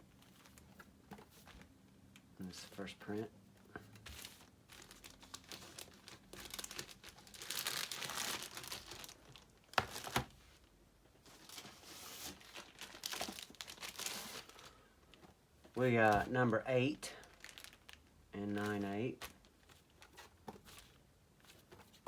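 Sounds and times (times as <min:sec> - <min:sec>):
plastic packaging crinkling: 0:03.9 - 0:10.4, 0:11.2 - 0:14.9, 0:16.9 - 0:21.0.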